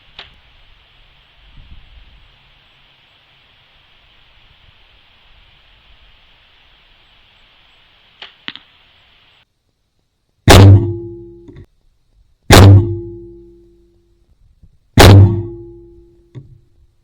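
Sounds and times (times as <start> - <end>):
bow string crack: 8.2 - 8.7
faint clicks: 8.2 - 8.7.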